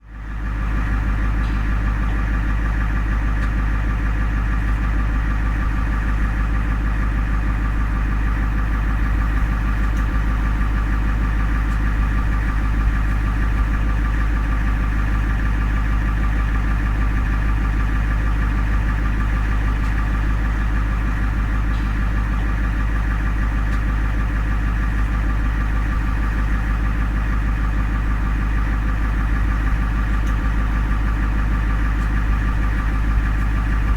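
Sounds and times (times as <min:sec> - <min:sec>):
ambulance engine idling: 0:00.0 - 0:33.9.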